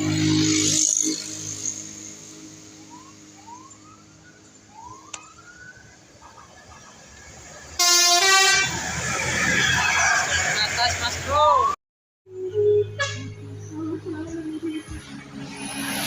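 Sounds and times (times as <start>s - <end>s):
multi-tone bus horn: 7.8s - 10.6s, 12.5s - 13.5s.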